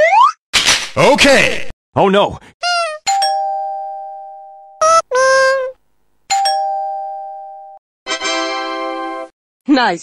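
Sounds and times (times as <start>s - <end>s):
high-pitched cartoon voice: 2.6s - 3.1s, 4.8s - 5.8s
doorbell chime: 3.1s - 4.8s, 6.3s - 7.8s.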